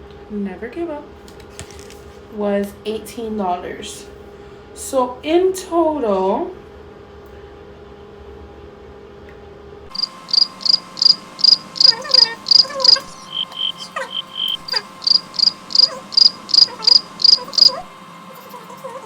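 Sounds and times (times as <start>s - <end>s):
crickets chirping: 9.9s - 17.9s.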